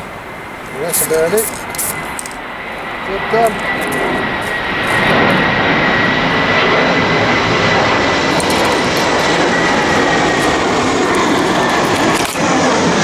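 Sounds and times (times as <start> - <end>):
jet aircraft roar: 0.0 - 13.0
thin high jet whine: 0.0 - 13.0.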